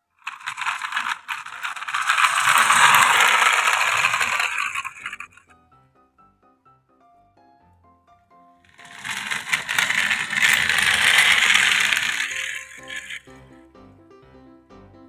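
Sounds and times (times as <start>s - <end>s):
toys rattling and clattering: 0.2s - 5.4s, 8.7s - 13.3s
light background melody: 5.4s - 8.7s, 13.2s - 15.0s.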